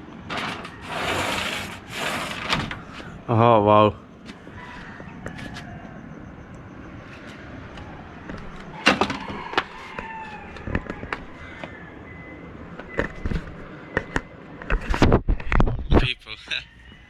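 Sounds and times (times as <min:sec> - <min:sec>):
faint outdoor ambience: 0:00.0 - 0:17.0
distant animal calls: 0:02.8 - 0:14.9.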